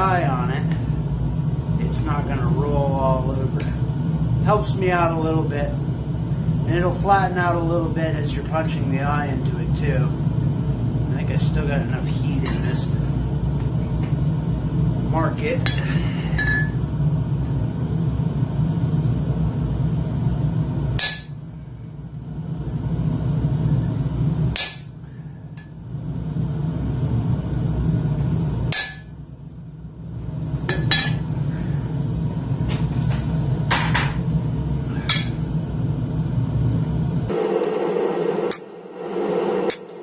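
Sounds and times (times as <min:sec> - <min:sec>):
hammer striking hot steel: 0:21.0 - 0:21.5, 0:24.5 - 0:25.7, 0:28.7 - 0:29.3, 0:35.1 - 0:35.4, 0:38.4 - 0:40.0.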